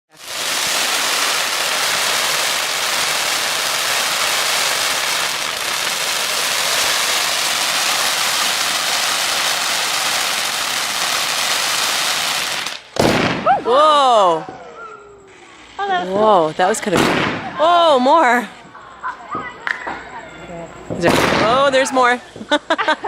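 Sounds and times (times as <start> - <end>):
fountain firework hissing: 0.1 - 13.3.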